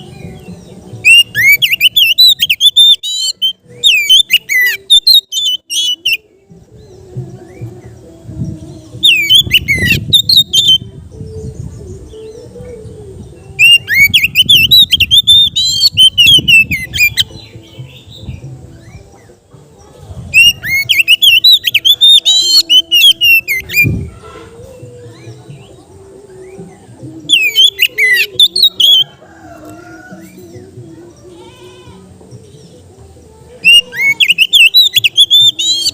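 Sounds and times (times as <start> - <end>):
bird singing whistled phrases: 1.0 - 6.2, 9.0 - 10.9, 13.6 - 17.3, 20.3 - 24.0, 27.3 - 29.1, 33.6 - 35.9.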